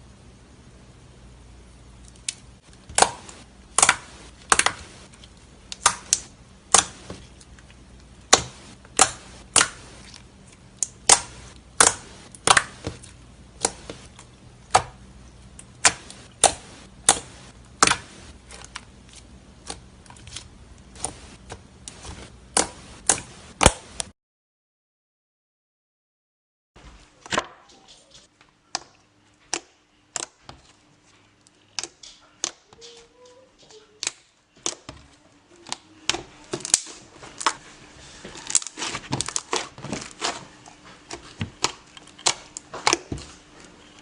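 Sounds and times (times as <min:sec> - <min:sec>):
slime being squished: 0:02.2 - 0:15.0, 0:15.6 - 0:24.1, 0:38.4 - 0:43.4.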